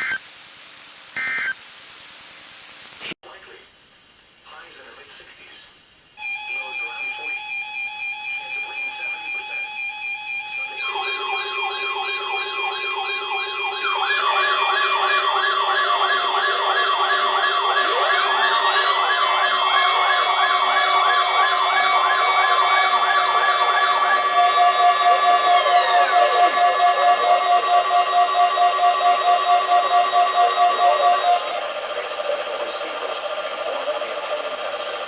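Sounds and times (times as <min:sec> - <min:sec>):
steady electronic tones: 0:06.2 - 0:33.4
falling siren glide: 0:06.2 - 0:35.0
fast wailing siren: 0:06.2 - 0:35.0
pulsing tone: 0:06.2 - 0:35.0.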